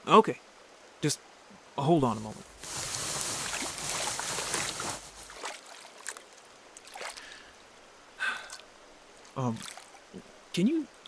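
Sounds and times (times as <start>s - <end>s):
water sloshing and splashing: 2.1s - 7.3s, 9.5s - 10.0s
small splashes and drips: 2.6s - 7.6s, 8.4s - 10.2s.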